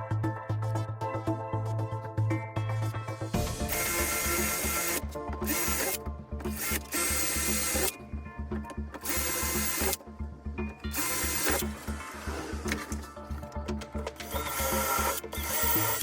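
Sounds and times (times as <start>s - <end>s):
background music with steady beat: 0.0s - 16.0s
power tool running in bursts: 3.6s - 7.9s, 9.0s - 10.0s, 10.9s - 12.8s, 14.3s - 16.0s.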